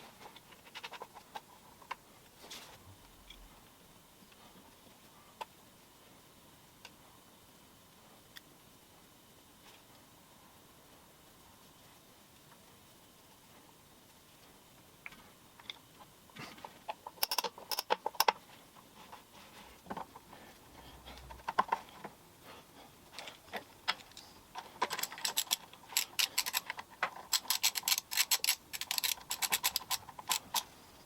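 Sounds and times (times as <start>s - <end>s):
small metal parts clinking: 24.0s - 30.7s.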